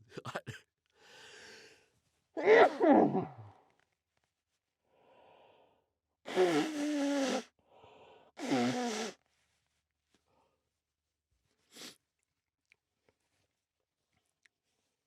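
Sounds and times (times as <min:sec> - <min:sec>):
quick in-breath: 0:01.0 - 0:01.9, 0:04.9 - 0:09.2.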